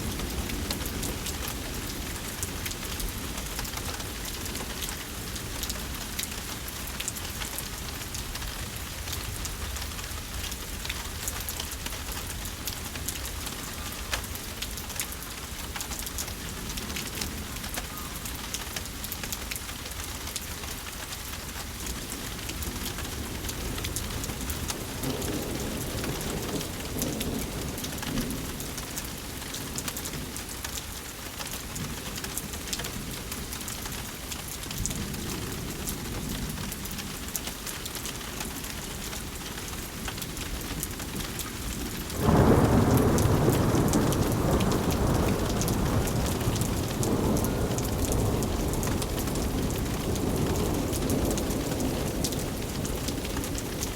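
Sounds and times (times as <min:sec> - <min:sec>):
rain falling: 0:00.0 - 0:53.9
low roll of thunder: 0:22.5 - 0:29.4, 0:40.6 - 0:53.9.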